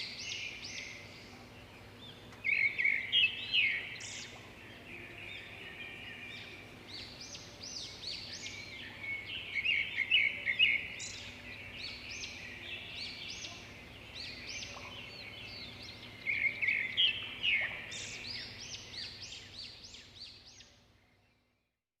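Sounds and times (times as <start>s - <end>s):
songbirds chirping and trilling: 0.0s - 21.8s.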